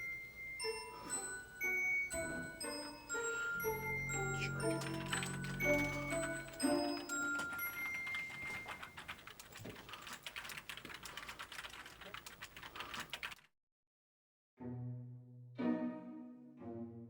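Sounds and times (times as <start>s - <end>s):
fast typing on keyboard: 4.4s - 13.5s.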